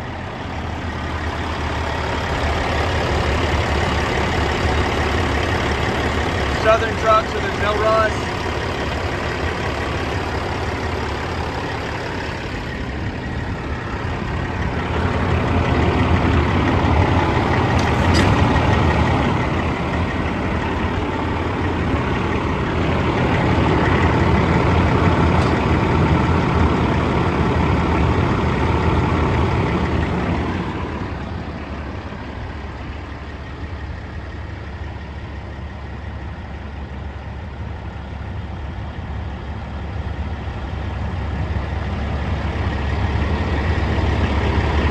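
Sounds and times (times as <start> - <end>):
diesel truck engine idling: 0.0 - 44.9.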